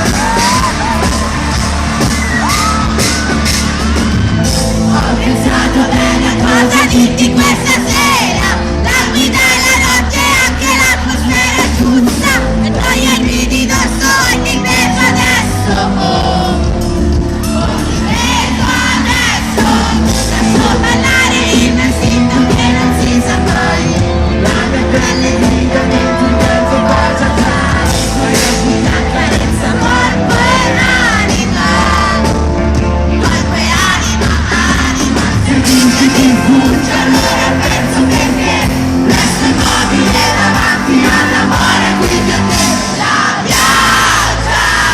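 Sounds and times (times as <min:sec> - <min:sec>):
audience shouting: 0:00.0 - 0:05.3
lead vocal singing: 0:00.0 - 0:44.9
pop-rock band playing live: 0:00.0 - 0:44.9.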